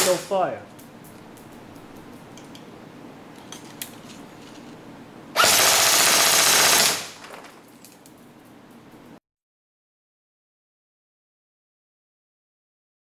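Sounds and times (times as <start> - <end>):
airsoft gun full-auto burst: 5.4 - 7.2.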